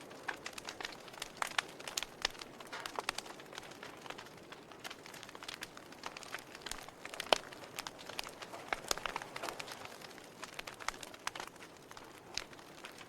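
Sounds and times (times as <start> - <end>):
wood fire crackling and popping: 0.0 - 13.0.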